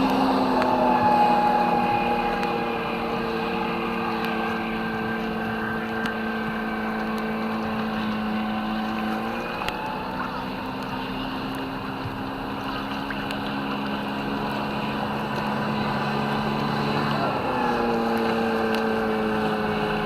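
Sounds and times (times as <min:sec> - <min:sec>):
rushing noise: 0:00.0 - 0:10.7
engine humming: 0:00.0 - 0:20.0.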